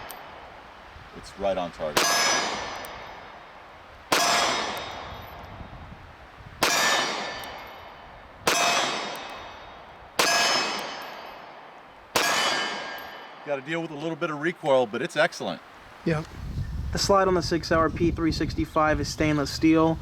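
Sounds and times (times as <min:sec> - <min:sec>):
pistol shots: 0:01.8 - 0:05.4, 0:06.6 - 0:13.6
steel target clanging: 0:01.8 - 0:05.6, 0:06.6 - 0:14.2.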